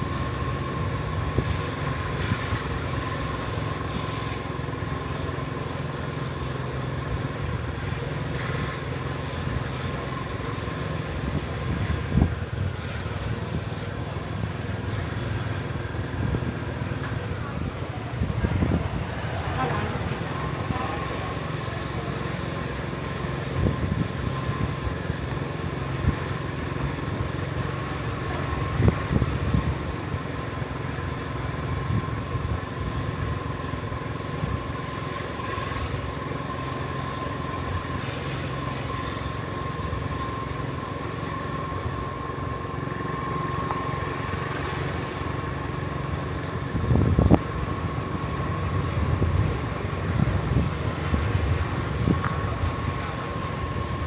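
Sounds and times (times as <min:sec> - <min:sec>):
thin steady whine: 0:00.0 - 0:54.0
vehicle engine and road rumble: 0:00.0 - 0:54.0.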